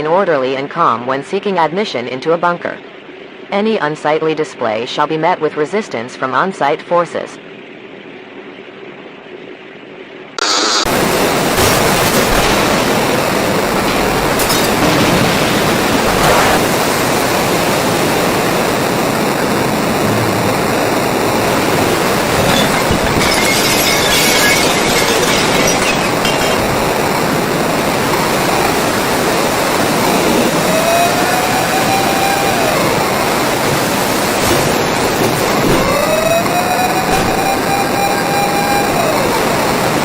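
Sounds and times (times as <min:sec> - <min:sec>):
loud steady rushing noise: 0:10.4 - 0:25.4, 0:26.0 - 0:40.0.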